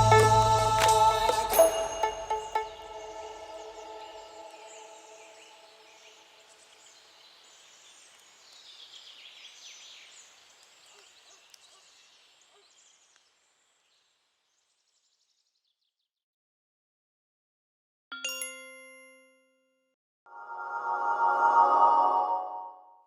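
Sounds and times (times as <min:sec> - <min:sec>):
faint birdsong chirps and trills: 0:02.6 - 0:16.1.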